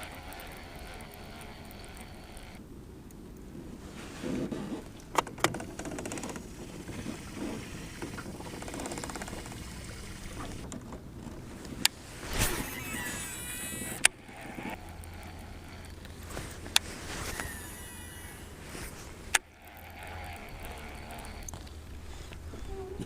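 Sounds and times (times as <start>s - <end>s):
fishing reel clicks: 0.0s - 2.6s, 12.4s - 22.4s
line whirring off reel: 0.0s - 2.6s, 5.5s - 10.8s, 11.9s - 22.3s
outdoor background noise: 0.0s - 23.0s.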